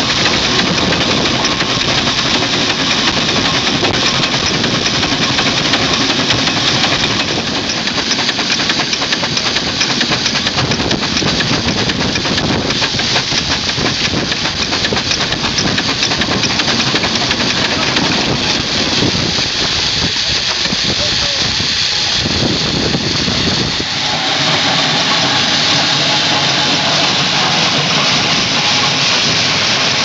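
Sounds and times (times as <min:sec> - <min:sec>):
hiss of steam: 0:00.0 - 0:30.0
steam engine exhaust beats: 0:00.0 - 0:30.0.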